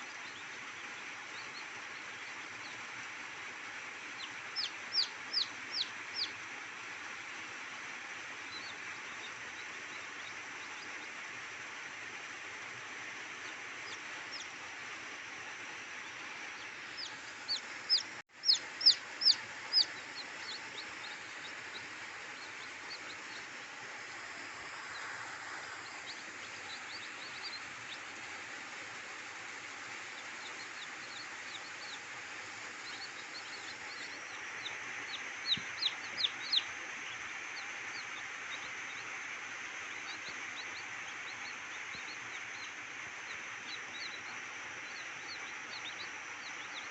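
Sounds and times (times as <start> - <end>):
steady background hiss: 0.0 - 46.9
chickens calling: 4.1 - 6.4, 16.0 - 39.2.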